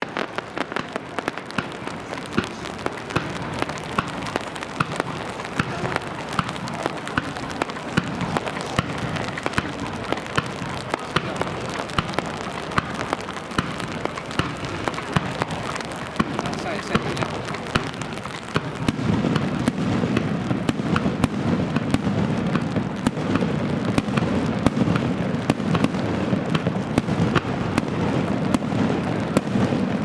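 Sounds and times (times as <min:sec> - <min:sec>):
rain on an umbrella: 0:00.0 - 0:30.0.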